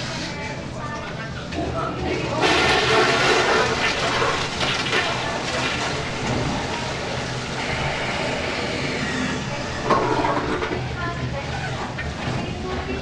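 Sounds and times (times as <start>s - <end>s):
faint voices: 4.0s - 13.0s.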